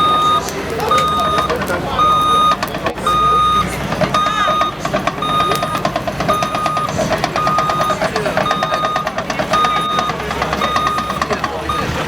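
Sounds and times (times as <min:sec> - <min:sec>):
diesel engine clattering: 0:00.0 - 0:12.0
reversing alarm beeping: 0:00.0 - 0:12.0.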